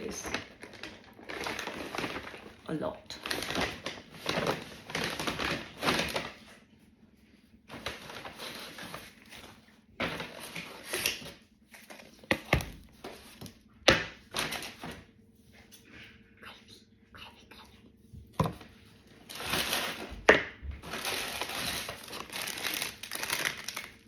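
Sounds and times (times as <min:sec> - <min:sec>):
bag rustling and crinkling: 0:00.0 - 0:06.6, 0:07.5 - 0:12.2, 0:19.2 - 0:20.2, 0:20.8 - 0:24.0.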